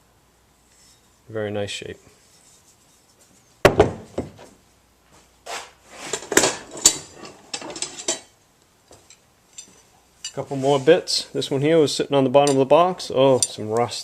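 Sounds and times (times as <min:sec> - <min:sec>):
metal tools clattering in a tool box: 0:06.3 - 0:08.3.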